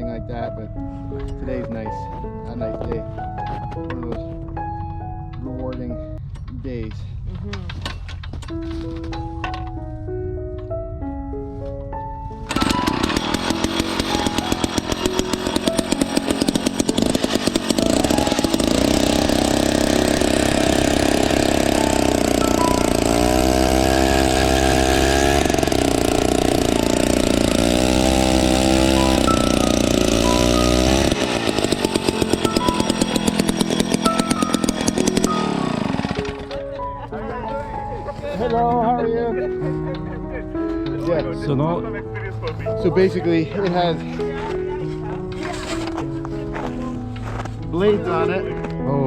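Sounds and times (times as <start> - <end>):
music with plucked notes: 0.0 - 6.2, 7.5 - 49.0
ice auger engine revving: 12.5 - 36.7, 45.3 - 46.1.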